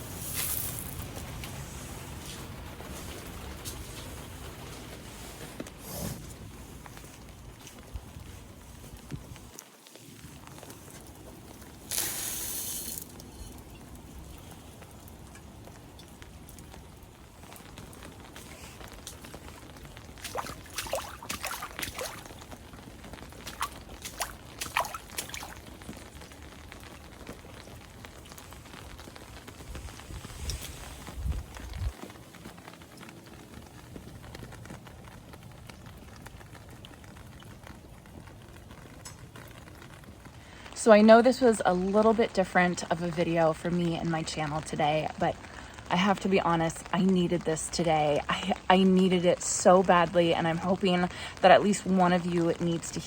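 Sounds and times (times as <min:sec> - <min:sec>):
rain pattering and dripping: 0:00.0 - 0:53.0
rush of hiss: 0:11.9 - 0:13.1.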